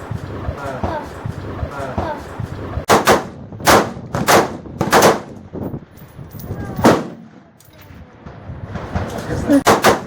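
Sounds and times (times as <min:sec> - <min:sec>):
gunshots: 0:02.9 - 0:05.4, 0:06.8 - 0:07.4, 0:08.2 - 0:10.0.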